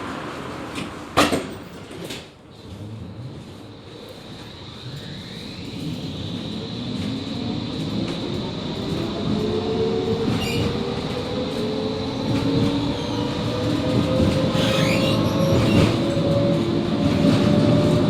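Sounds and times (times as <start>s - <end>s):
wheels rumbling on rail: 0.0s - 18.0s
tram motor whine: 2.5s - 18.0s
wheel squeals: 10.3s - 10.9s, 12.8s - 16.2s.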